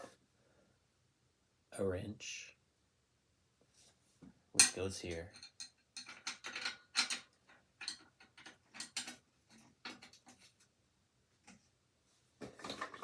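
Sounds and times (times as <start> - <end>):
metal tools clinking: 4.6 - 10.1.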